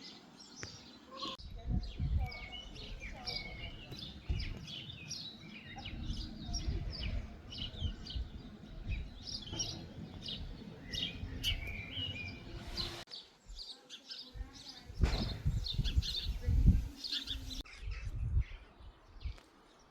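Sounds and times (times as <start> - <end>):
small birds chirping and trilling: 0.0 - 19.9
low rumble: 5.6 - 13.1.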